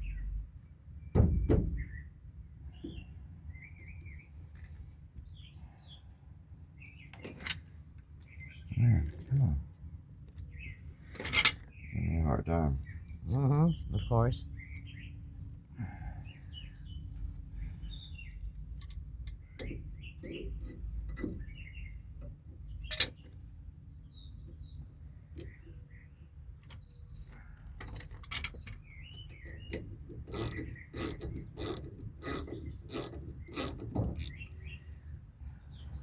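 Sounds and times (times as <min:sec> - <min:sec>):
faint birds chirping: 0:00.0 - 0:36.0
ratchet wrench clicking: 0:30.3 - 0:34.4.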